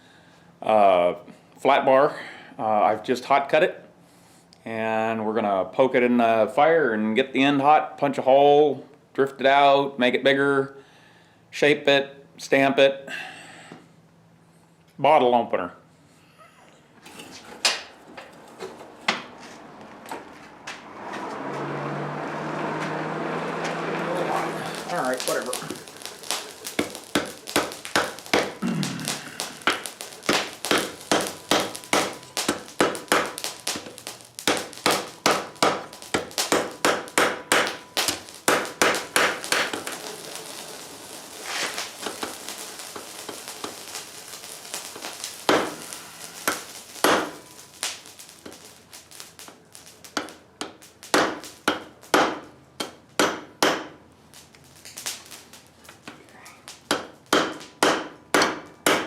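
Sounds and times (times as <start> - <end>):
hammer striking steel on anvil: 29.6 - 33.9, 34.5 - 39.9, 50.2 - 53.9, 56.9 - 59.0.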